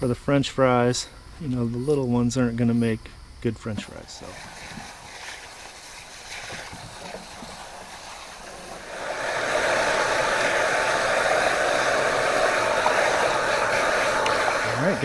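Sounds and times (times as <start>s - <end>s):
water running into a sink: 3.9s - 15.0s.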